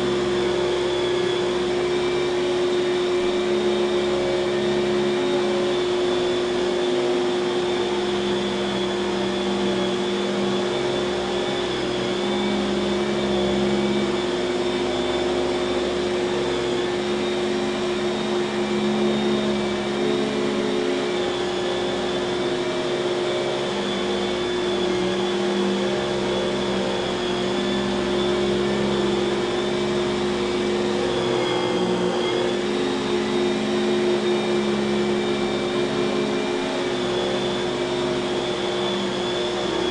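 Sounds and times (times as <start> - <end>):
vacuum cleaner whining: 0.0 - 39.9.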